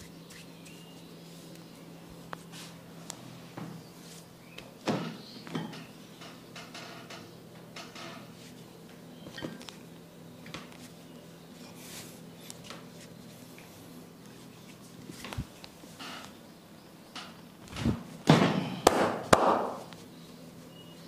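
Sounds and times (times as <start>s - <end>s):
hands rubbing skin and hair: 0.0s - 3.2s
steady low hum: 0.0s - 21.0s.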